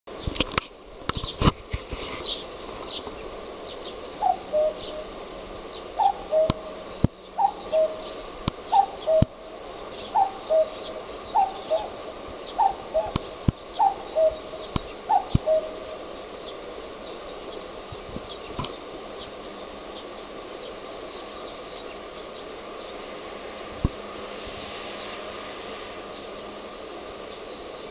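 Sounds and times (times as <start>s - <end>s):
cuckoo calling: 2.2s - 22.0s, 26.1s - 27.9s.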